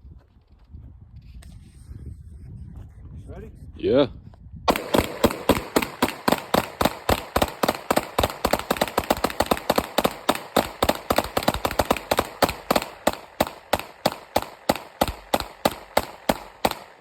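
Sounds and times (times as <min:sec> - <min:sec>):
rapid gunfire: 0:04.7 - 0:17.0.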